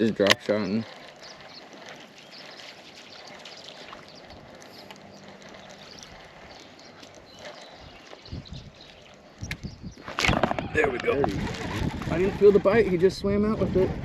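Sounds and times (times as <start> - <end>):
water washing around a boat: 0.0 - 9.4.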